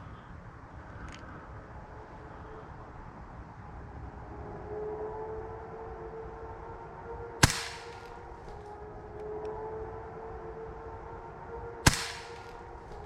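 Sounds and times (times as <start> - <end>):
steady tonal drone: 0.0 - 13.0
air rifle shot cracks: 7.4 - 8.6, 11.9 - 13.0.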